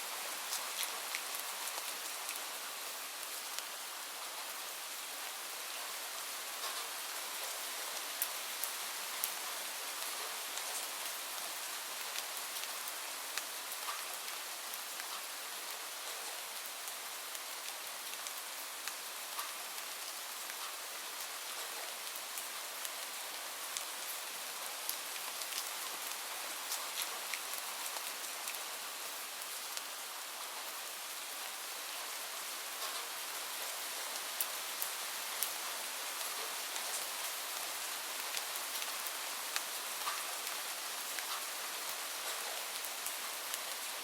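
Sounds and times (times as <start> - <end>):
light rain falling: 0.0 - 44.0
rain drop ticks: 13.4 - 14.1, 32.8 - 33.1, 38.2 - 40.6, 41.2 - 41.5.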